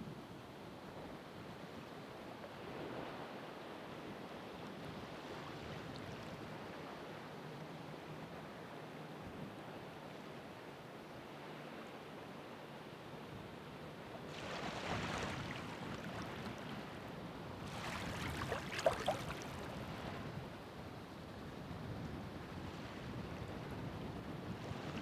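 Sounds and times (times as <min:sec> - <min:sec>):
ocean waves breaking: 0:14.3 - 0:20.2
water splashing: 0:17.7 - 0:19.8.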